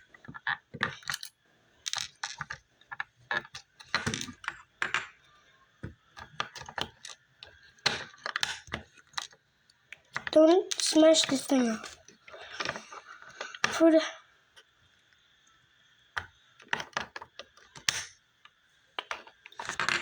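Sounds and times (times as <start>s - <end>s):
plastic bricks clicking and clattering: 0.2s - 5.2s, 5.8s - 9.4s, 10.0s - 13.8s, 16.6s - 18.1s, 19.0s - 20.0s.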